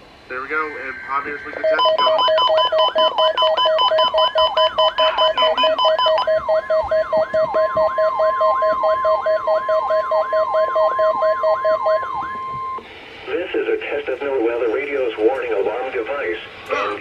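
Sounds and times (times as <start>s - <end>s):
rapid beeping: 0.3s - 12.8s
steady warning alarm tone: 0.4s - 12.9s
siren-like rising warble: 5.3s - 12.8s.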